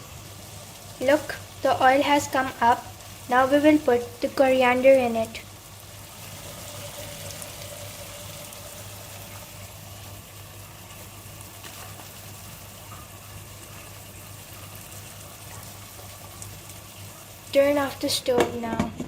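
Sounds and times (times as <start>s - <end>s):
steady low hum: 0.0s - 11.6s
food sizzling in oil: 0.0s - 19.0s.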